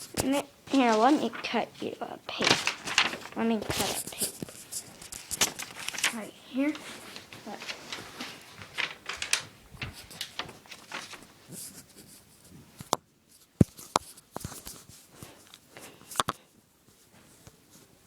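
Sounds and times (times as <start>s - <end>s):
paper rustling and crinkling: 0.0s - 12.6s.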